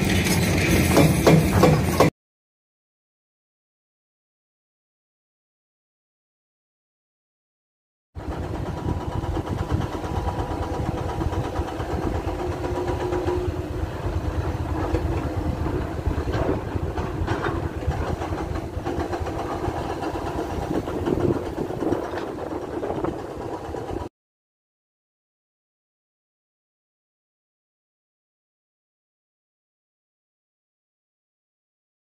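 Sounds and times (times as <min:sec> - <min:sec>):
excavator diesel engine running: 0:00.0 - 0:02.1, 0:08.2 - 0:24.1.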